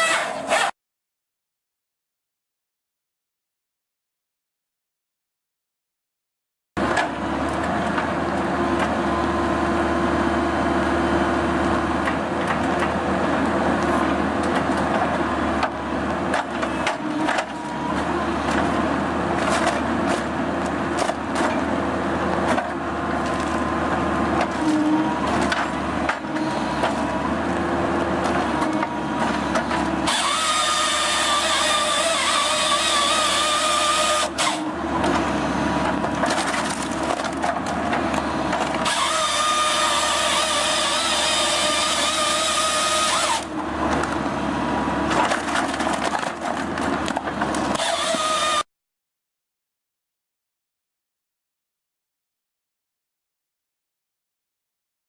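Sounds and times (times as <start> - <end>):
saw cutting through log: 0.0 - 0.8, 21.0 - 48.7
hydraulic and engine drone: 6.8 - 48.7
logs cracking and splitting: 12.0 - 44.4, 45.0 - 48.6.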